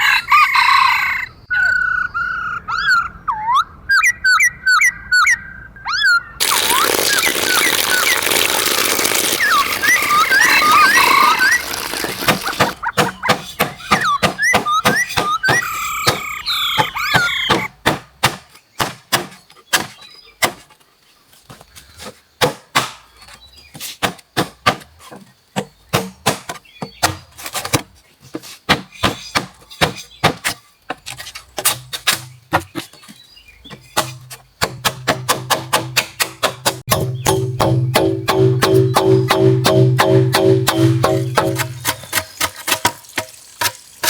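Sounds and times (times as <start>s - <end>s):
birds chirping: 1.4s - 17.8s, 18.6s - 22.4s, 25.4s - 27.4s, 31.9s - 34.6s, 36.9s - 42.5s
tool chopping wood: 11.4s - 16.3s, 17.2s - 20.8s, 22.0s - 23.4s, 24.0s - 27.9s, 28.7s - 32.9s, 33.7s - 43.8s.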